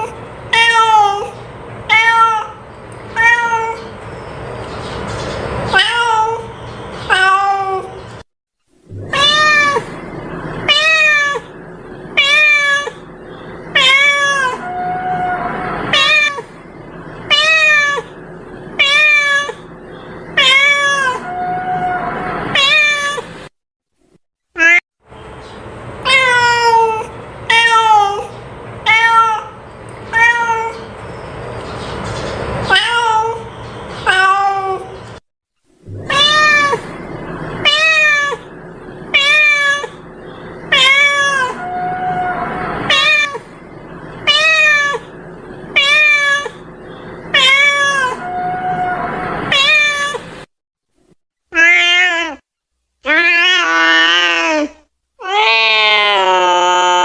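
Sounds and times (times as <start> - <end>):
cat meowing: 0.0 - 3.9, 5.7 - 8.0, 8.9 - 10.0, 10.6 - 11.5, 12.2 - 13.1, 13.7 - 16.5, 17.3 - 18.1, 18.8 - 19.7, 20.4 - 23.3, 26.1 - 30.9, 32.7 - 35.0, 35.9 - 36.9, 37.6 - 38.5, 39.1 - 40.0, 40.7 - 43.5, 44.2 - 45.1, 45.7 - 46.7, 47.3 - 50.3, 51.6 - 52.4, 53.0 - 57.0.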